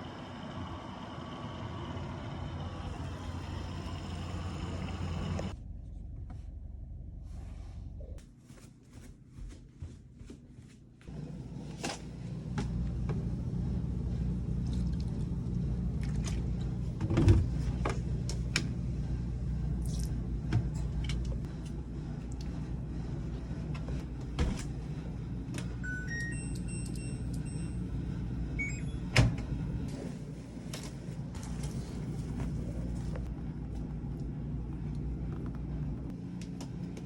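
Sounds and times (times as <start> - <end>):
low hum: 0.0 - 8.2.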